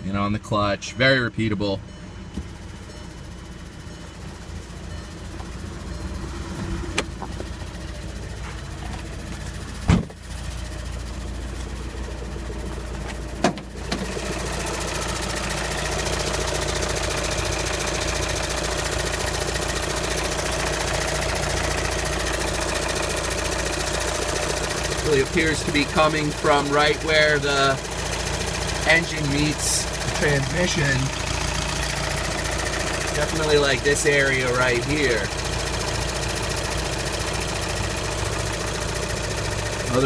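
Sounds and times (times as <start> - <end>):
diesel engine idling: 0.0 - 40.0
sharp engine knocks: 6.5 - 7.5, 8.8 - 10.3, 12.9 - 14.1.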